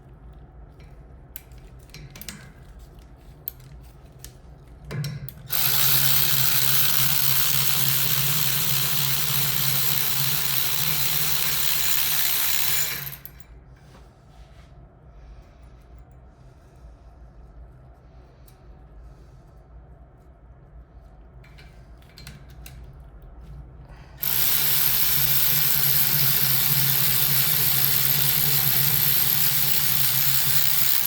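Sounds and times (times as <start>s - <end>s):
power tool running: 5.5s - 13.4s, 24.2s - 31.0s.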